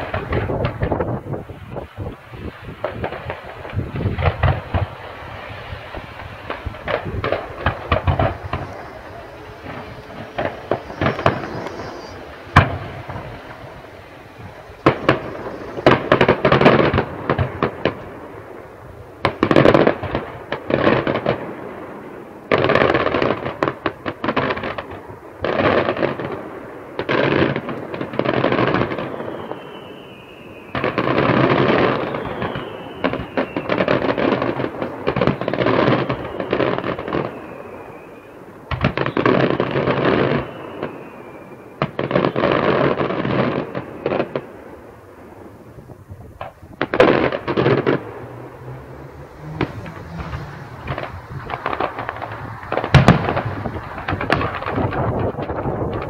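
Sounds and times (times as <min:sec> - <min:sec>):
fireworks bangs and crackling: 0:00.0 - 0:56.0
falling whistles: 0:08.4 - 0:16.7, 0:29.0 - 0:31.1, 0:31.7 - 0:33.8, 0:35.9 - 0:42.5.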